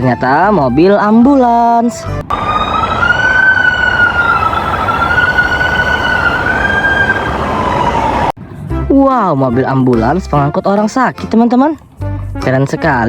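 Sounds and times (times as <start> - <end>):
emergency vehicle siren wailing: 2.2 - 8.4
loud rushing noise: 2.3 - 8.3.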